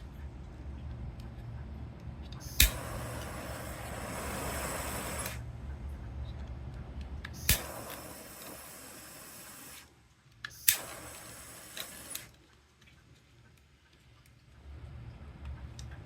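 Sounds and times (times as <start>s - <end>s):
piezo igniter click: 2.4s - 5.4s, 7.2s - 12.4s
torch jet flame hissing: 2.4s - 5.5s, 7.3s - 12.4s.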